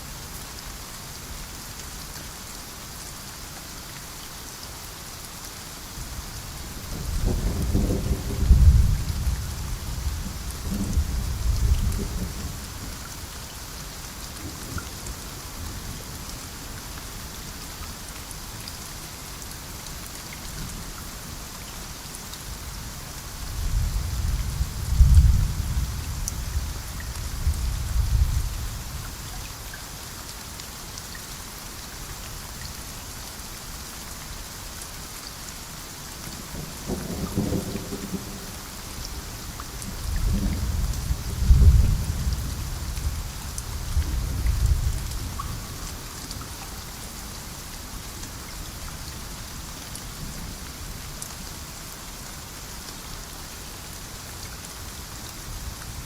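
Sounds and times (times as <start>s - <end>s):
steady rain: 0.0s - 56.0s
thunder rumbling: 7.0s - 12.6s, 40.0s - 43.2s.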